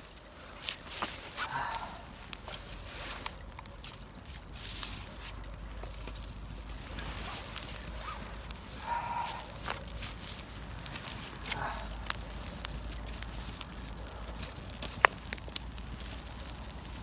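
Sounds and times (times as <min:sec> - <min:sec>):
paper rustling: 0:00.0 - 0:11.8
fire crackling: 0:00.0 - 0:17.0.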